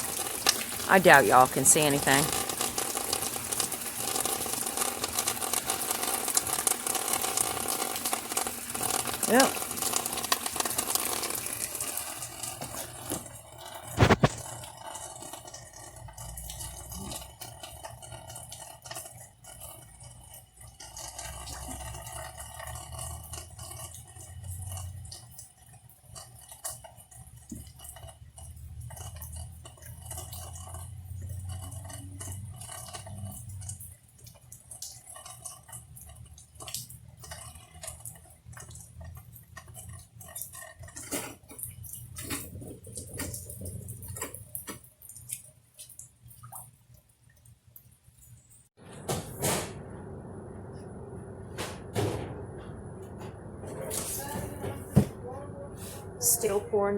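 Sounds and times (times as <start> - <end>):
heavy rain pouring: 0.0 - 14.7
drips and ticks: 0.0 - 48.8.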